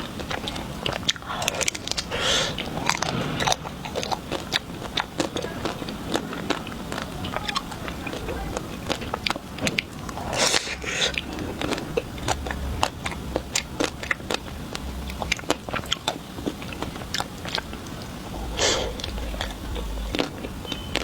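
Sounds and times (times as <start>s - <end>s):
crunchy ice cream chewing: 0.0s - 21.0s.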